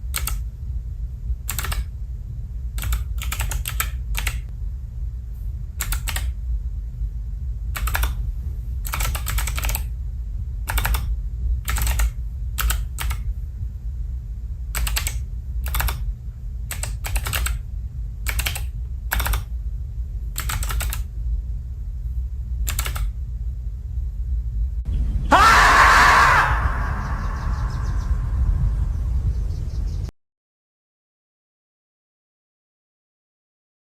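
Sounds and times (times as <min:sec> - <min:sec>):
keypad keystroke clicks: 0:00.0 - 0:00.4, 0:01.5 - 0:01.9, 0:02.8 - 0:04.5, 0:05.8 - 0:06.4, 0:07.8 - 0:08.2, 0:08.8 - 0:09.9, 0:10.7 - 0:13.3, 0:14.8 - 0:16.1, 0:16.7 - 0:17.6, 0:18.3 - 0:19.5, 0:20.4 - 0:21.1, 0:22.7 - 0:23.2
steady low hum: 0:00.0 - 0:30.1.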